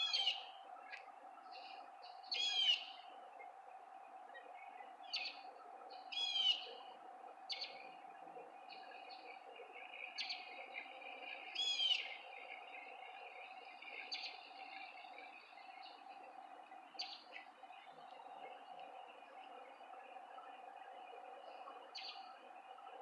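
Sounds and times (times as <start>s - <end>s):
bird calling: 0.0s - 3.5s, 4.3s - 18.5s
steady hum: 0.0s - 23.0s.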